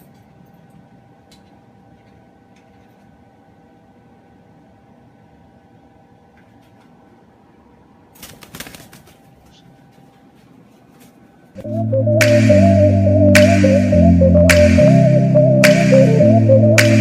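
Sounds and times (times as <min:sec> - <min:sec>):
bird flapping wings: 0:08.2 - 0:09.6
electronic music: 0:11.6 - 0:17.0.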